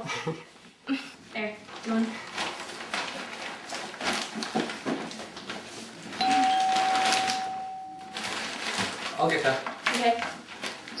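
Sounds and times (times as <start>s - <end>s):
kitchen clattering and rustling: 1.8s - 7.6s
doorbell ringing: 6.2s - 8.2s.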